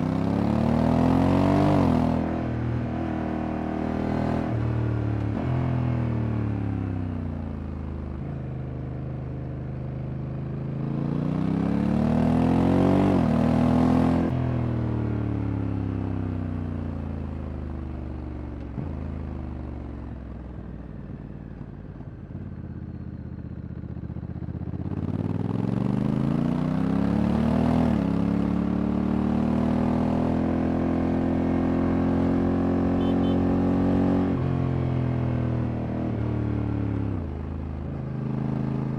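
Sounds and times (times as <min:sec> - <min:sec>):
motorcycle engine: 0:29.0 - 0:34.4.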